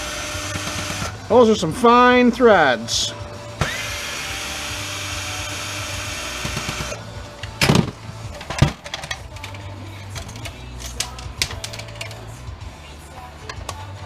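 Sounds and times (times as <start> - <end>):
power drill running: 0.0 - 1.2, 3.6 - 7.0
metal parts knocking: 7.4 - 12.2.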